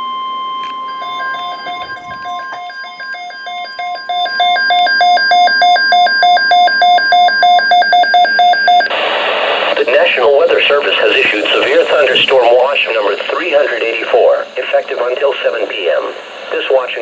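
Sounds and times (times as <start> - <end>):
steady warning alarm tone: 0.0 - 8.9
electronic beeping alternating low and high: 0.7 - 8.9.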